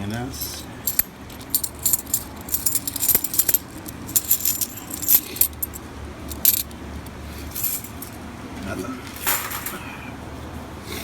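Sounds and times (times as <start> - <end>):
coins clinking: 0.4 - 6.7, 7.5 - 8.1.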